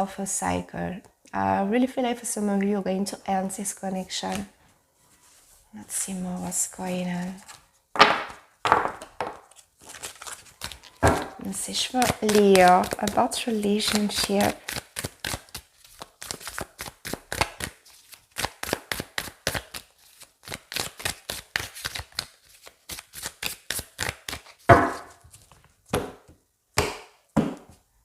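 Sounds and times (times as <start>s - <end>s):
cards knocking on table: 8.0s - 9.4s, 11.0s - 11.4s, 24.7s - 25.1s, 25.9s - 27.7s
cards being shuffled: 9.0s - 26.1s.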